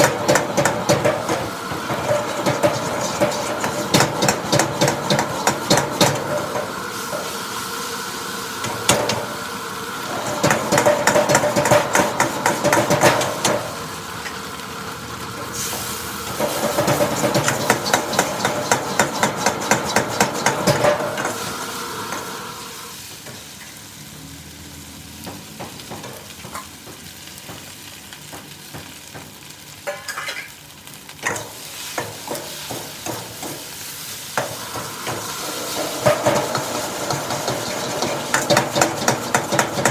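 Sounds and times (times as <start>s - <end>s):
metal clanks: 0.0s - 6.7s, 34.4s - 39.9s
metal spatula scraping a wok: 0.0s - 7.3s, 15.5s - 21.5s, 29.9s - 30.6s, 31.2s - 39.9s
food sizzling: 0.0s - 39.9s.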